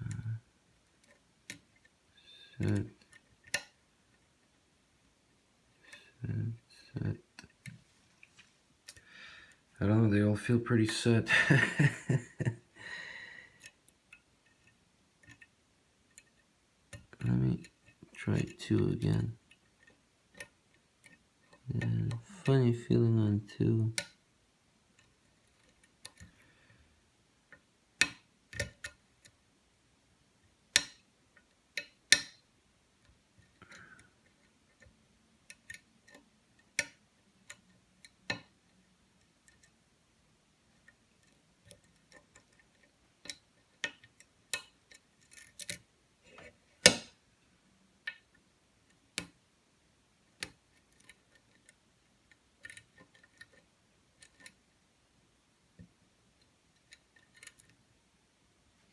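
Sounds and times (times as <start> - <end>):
lock pick clicking on pins: 2.6 - 3.8, 27.5 - 29.4, 30.7 - 32.4, 33.4 - 38.6, 40.9 - 45.9, 46.8 - 47.2, 50.4 - 54.6, 56.8 - 57.8.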